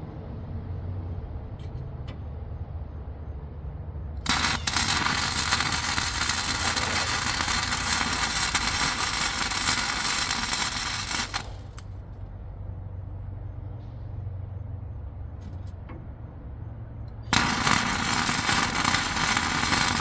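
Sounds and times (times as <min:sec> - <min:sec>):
welding arc crackling: 0:04.2 - 0:12.0, 0:17.3 - 0:20.0.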